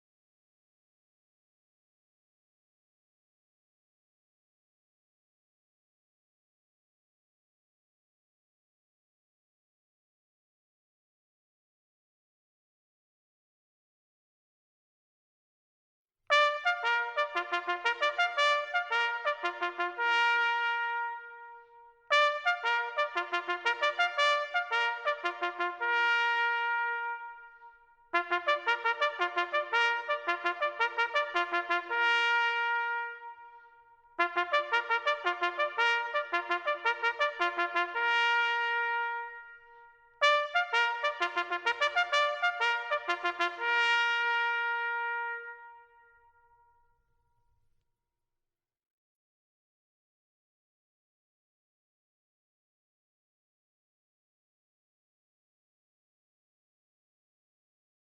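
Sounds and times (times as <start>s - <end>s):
solo bugle call: 16.3s - 46.6s.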